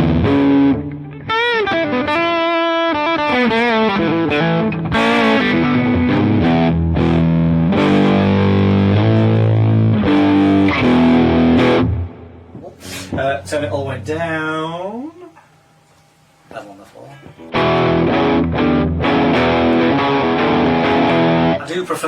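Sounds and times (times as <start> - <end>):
overdriven electric guitar: 0.0 - 12.6, 17.4 - 21.7.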